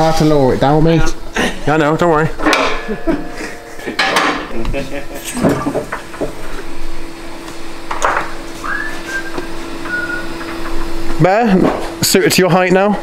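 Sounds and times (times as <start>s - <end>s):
high motor whine: 0.0s - 13.0s
metal clanks: 2.4s - 6.4s.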